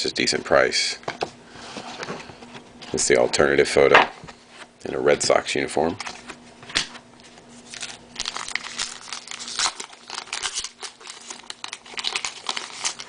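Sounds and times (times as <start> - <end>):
wrapper crinkling and tearing: 7.6 - 13.0.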